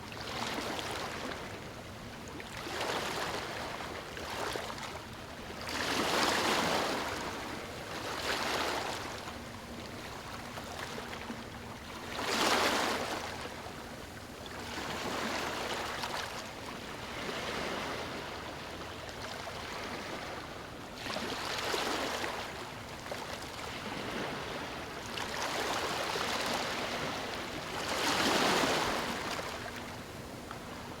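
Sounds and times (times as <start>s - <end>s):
ocean waves breaking: 23.7s - 30.9s.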